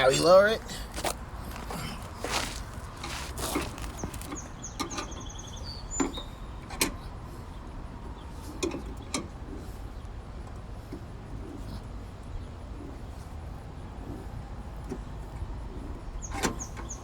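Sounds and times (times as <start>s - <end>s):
metallic clicks of car jack: 16.2s - 17.0s.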